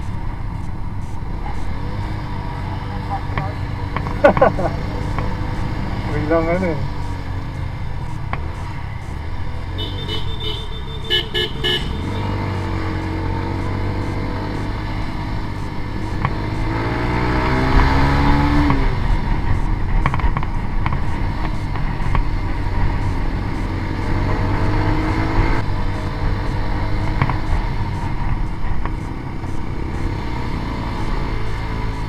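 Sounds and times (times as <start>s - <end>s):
motorcycle engine running: 0.0s - 32.0s
vehicle horn beeps: 9.0s - 14.8s.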